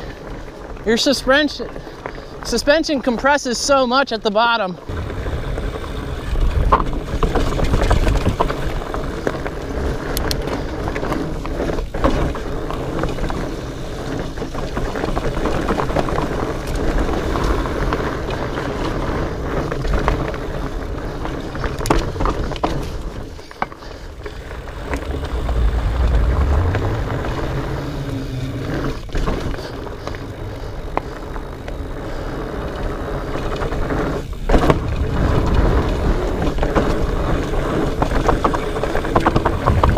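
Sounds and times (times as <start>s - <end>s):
tyres rumbling over rocks: 4.8s - 39.9s
wind buffeting microphone: 4.9s - 12.0s, 21.0s - 39.9s
bike knocks and rattles: 4.9s - 25.9s, 32.8s - 39.9s.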